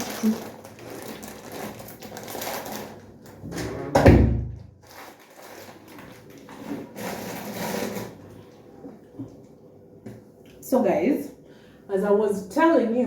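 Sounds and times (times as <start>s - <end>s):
loud low thump: 3.5s - 4.7s.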